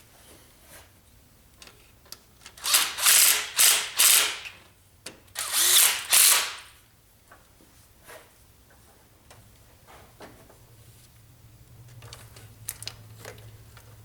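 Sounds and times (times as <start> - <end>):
power tool running in short bursts: 2.6 - 4.5, 5.4 - 6.8.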